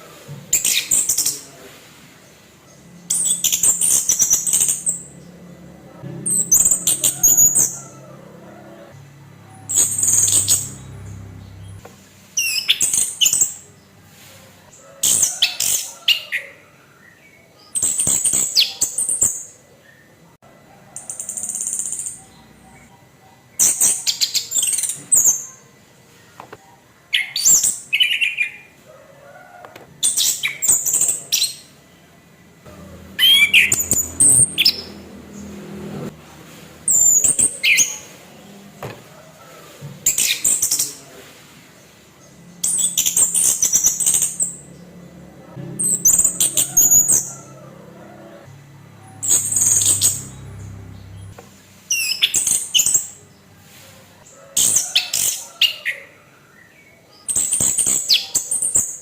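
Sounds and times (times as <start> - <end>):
thrush singing harsh chattering song: 2.3 - 13.9, 32.7 - 38.8, 42.2 - 53.5.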